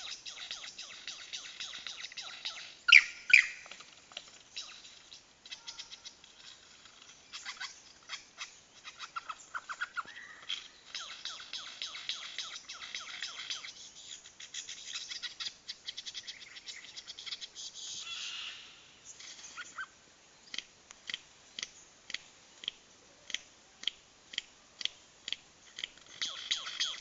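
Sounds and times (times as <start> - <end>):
lyrebird mimicked song notes: 0.0 - 3.7
lyrebird sharp clicks: 20.5 - 27.0.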